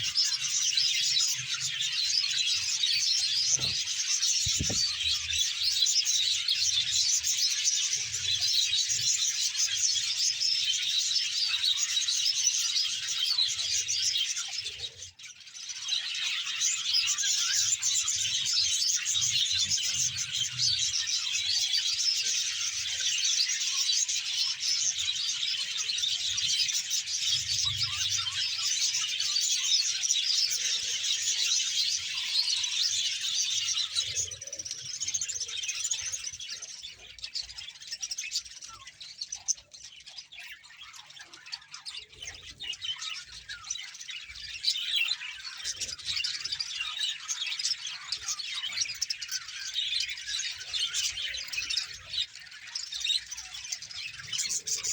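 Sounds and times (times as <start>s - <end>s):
budgerigars chattering and chirping: 0.0s - 54.9s.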